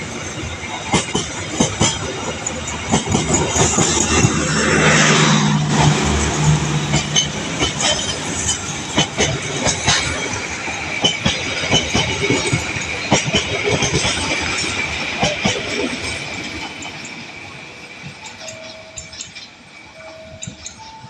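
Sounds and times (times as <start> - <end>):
train wheels clacking on rails: 0.0 - 21.0.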